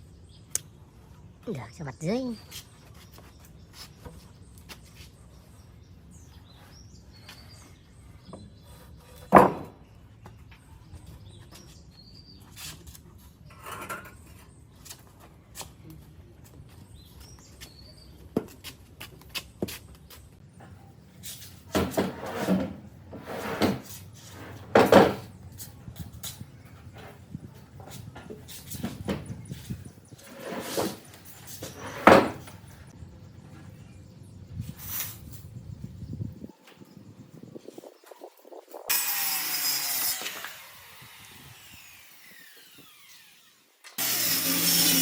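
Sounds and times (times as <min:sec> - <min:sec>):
bangs and scrapes: 0:21.4 - 0:25.4, 0:26.9 - 0:32.7.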